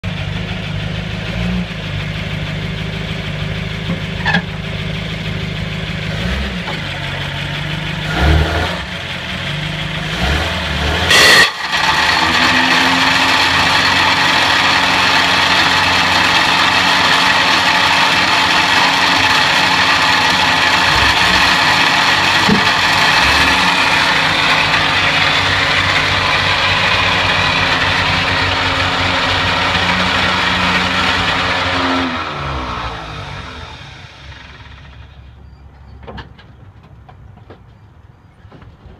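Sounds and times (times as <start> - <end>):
car engine grinding and clicking: 0.0 - 38.9
higher-pitched running sound: 11.2 - 31.7.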